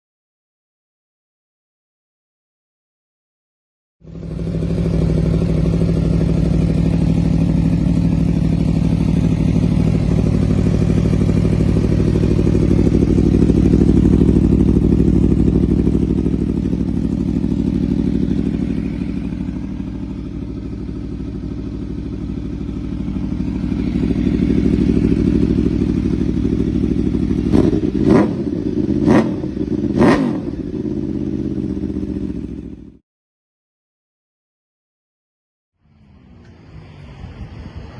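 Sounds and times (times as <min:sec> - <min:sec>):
motorcycle engine running: 0:04.0 - 0:33.0.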